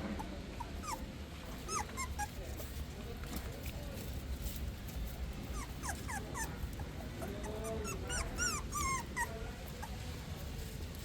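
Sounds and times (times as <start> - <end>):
puppies squeaking and whimpering: 0.2 - 2.4, 5.4 - 10.2.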